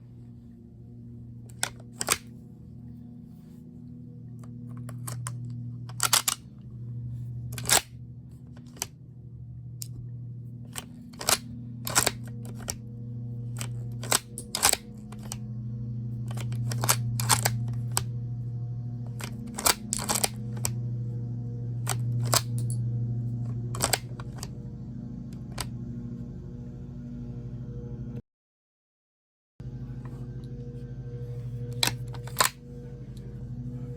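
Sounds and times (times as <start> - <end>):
steady low hum: 0.0 - 28.2, 29.6 - 33.9
metallic clicks of rifle bolt: 1.5 - 2.3, 4.9 - 6.4, 7.6 - 7.9, 10.7 - 12.8, 13.6 - 15.4, 19.2 - 20.8, 31.8 - 32.6.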